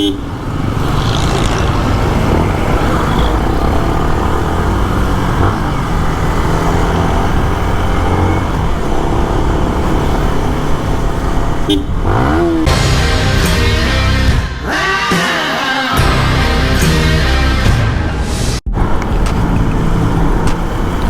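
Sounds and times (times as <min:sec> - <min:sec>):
car horns: 0:00.0 - 0:08.9, 0:11.0 - 0:17.6
motor vehicles running: 0:00.0 - 0:21.0.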